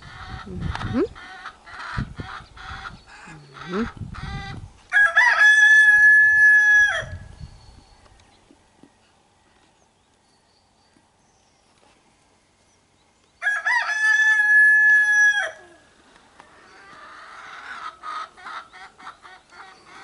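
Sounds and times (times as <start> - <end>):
rooster crowing: 4.9 - 7.2, 13.4 - 15.8
chicken clucking: 16.5 - 20.0.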